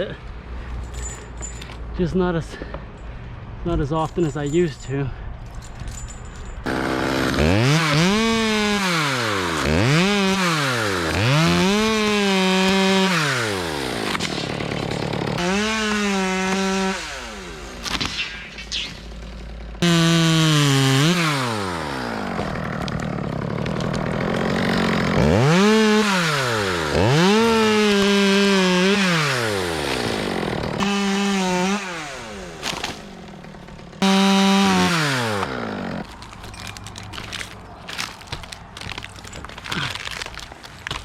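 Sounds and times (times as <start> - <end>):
chainsaw revving cutting wood: 6.7 - 17.9, 19.1 - 36.2.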